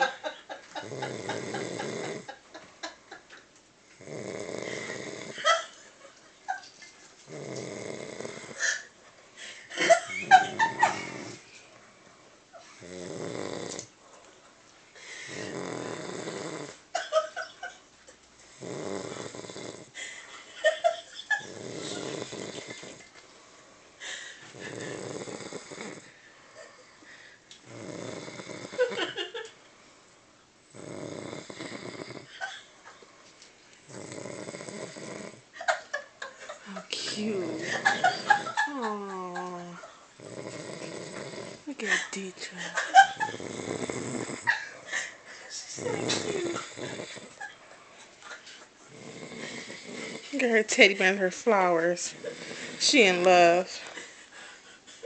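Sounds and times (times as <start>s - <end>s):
woman snoring: 0.8s - 2.4s, 4.0s - 5.6s, 7.3s - 8.9s, 9.8s - 11.4s, 12.8s - 13.9s, 15.1s - 17.3s, 18.6s - 20.0s, 20.6s - 23.0s, 24.5s - 26.2s, 27.6s - 29.4s, 30.7s - 32.5s, 33.9s - 35.4s, 36.7s - 47.5s, 48.9s - 50.6s, 51.8s - 54.0s.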